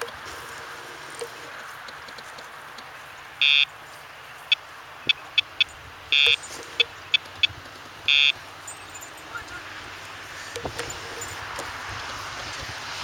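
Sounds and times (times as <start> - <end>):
electronic beeps: 3.4 - 3.7, 4.5 - 9.6.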